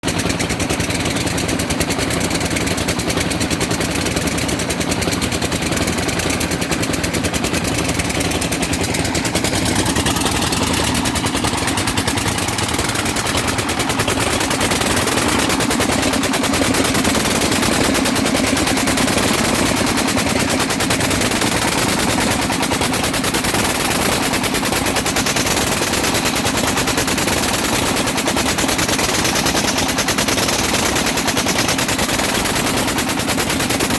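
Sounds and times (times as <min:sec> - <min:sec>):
diesel engine knocking steadily: 0:00.0 - 0:33.9.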